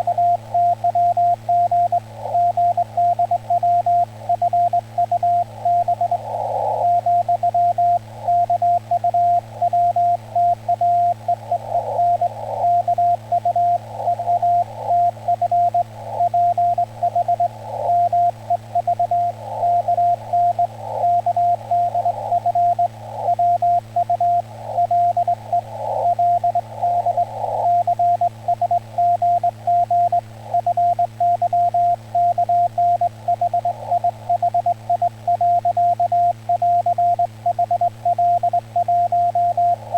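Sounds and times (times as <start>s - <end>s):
radio hiss: 0.0s - 39.9s
steady low hum: 0.0s - 39.9s.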